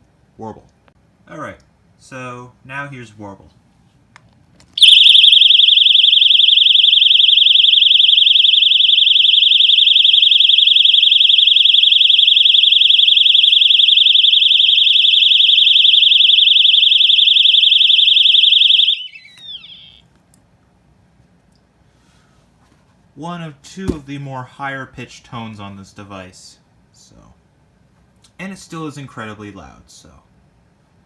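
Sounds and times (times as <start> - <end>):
fire alarm warbling tone: 4.8 - 20.0.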